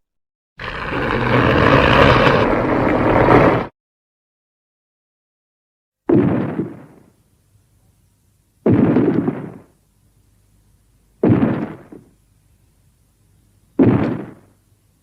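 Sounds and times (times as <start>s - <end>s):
loud explosion-like booms: 6.1s - 7.1s, 8.6s - 9.7s, 11.2s - 12.1s, 13.8s - 14.5s.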